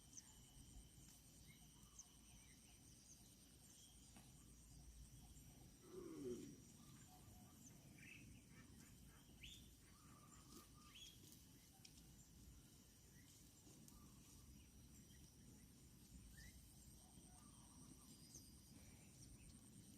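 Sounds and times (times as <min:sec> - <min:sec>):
high insect drone: 0:00.0 - 0:11.4.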